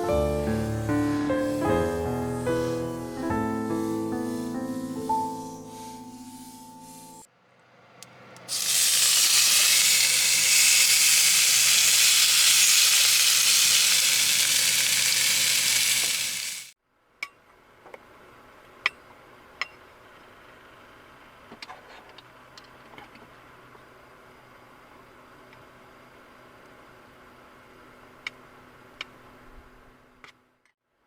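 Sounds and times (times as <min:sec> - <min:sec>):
food sizzling in a frying pan: 0:08.5 - 0:16.8.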